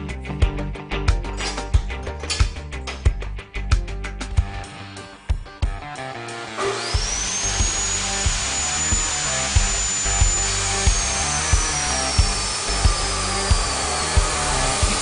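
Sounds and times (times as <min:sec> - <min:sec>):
background music with steady beat: 0:00.0 - 0:15.0
cut-off saw grinding metal: 0:05.8 - 0:15.0.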